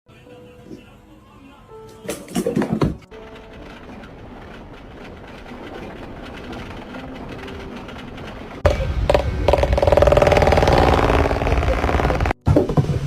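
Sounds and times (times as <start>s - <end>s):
machine rattling and humming: 3.1s - 12.4s.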